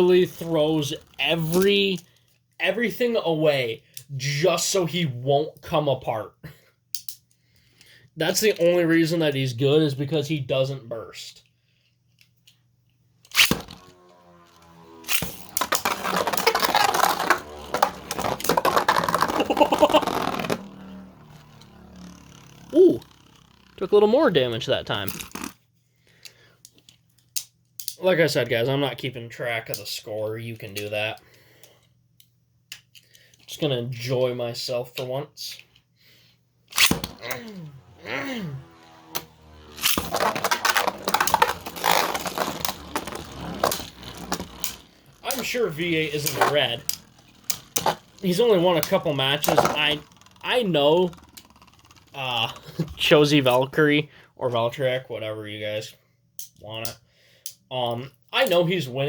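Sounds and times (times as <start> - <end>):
spinning tops whirring: 13.3 - 25.6, 36.8 - 53.6.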